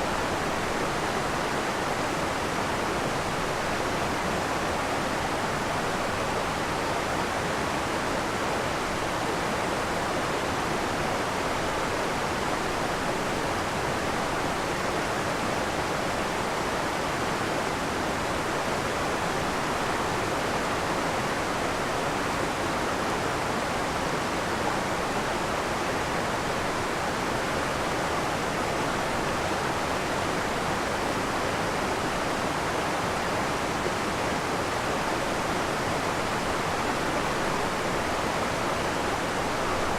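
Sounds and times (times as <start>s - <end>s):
waterfall rushing: 17.7s - 39.9s.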